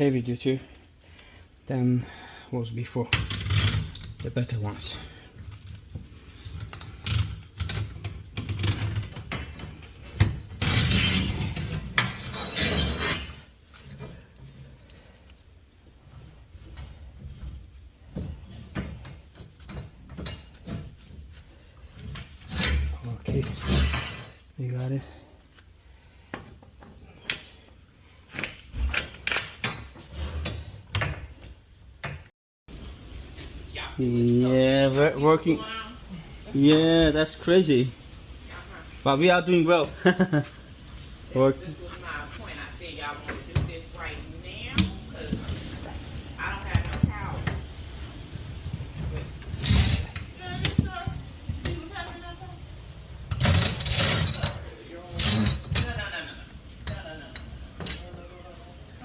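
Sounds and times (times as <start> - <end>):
metal parts clanking: 53.3 - 56.0.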